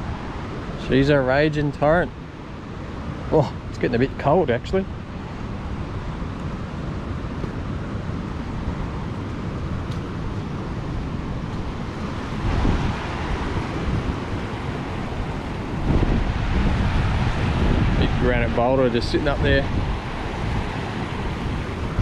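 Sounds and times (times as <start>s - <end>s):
wind buffeting microphone: 0.0s - 22.0s
water rushing over waterfall: 7.6s - 22.0s.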